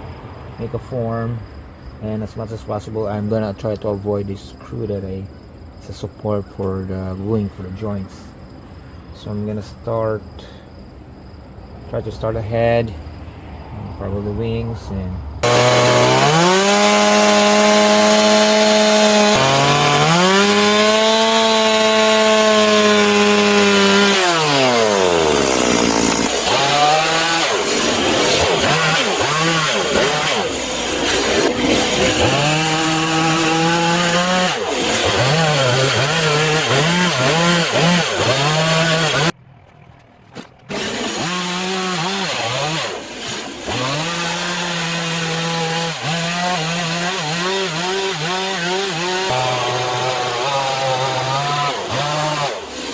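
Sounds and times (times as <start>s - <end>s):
chainsaw cutting wood: 15.4s - 39.4s, 40.4s - 52.9s.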